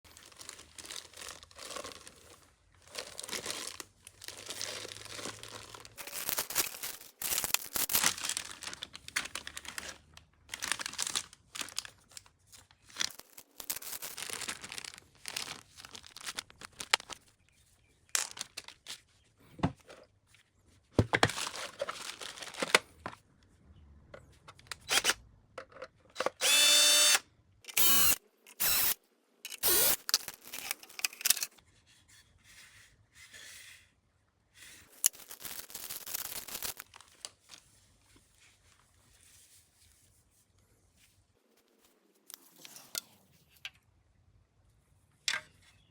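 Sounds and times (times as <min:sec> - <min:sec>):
packaging rustling and clicking: 0:00.1 - 0:17.3, 0:21.0 - 0:23.2, 0:29.5 - 0:31.6, 0:35.0 - 0:37.7.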